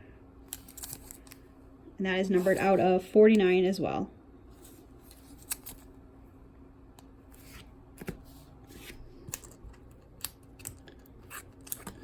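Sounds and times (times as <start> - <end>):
cards rustling in plastic sleeves: 0.5 - 1.5, 4.6 - 5.9.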